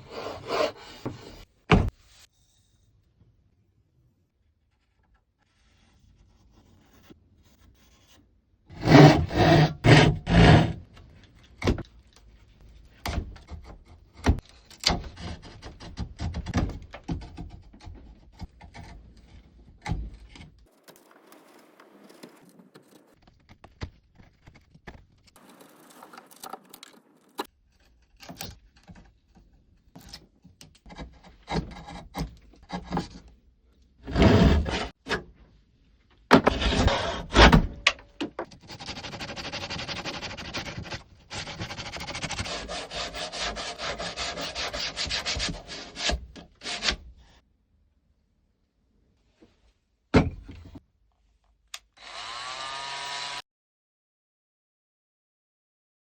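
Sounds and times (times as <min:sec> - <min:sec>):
wood scraping: 0:00.0 - 0:02.0, 0:08.7 - 0:11.1, 0:34.0 - 0:35.2, 0:36.3 - 0:47.1
rasping strokes on wood: 0:08.8 - 0:10.8, 0:38.6 - 0:47.0.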